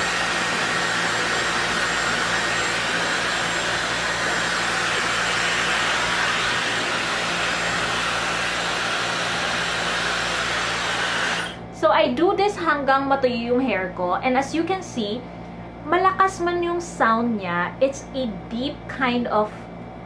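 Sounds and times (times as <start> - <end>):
hair dryer running: 0.0 - 11.7.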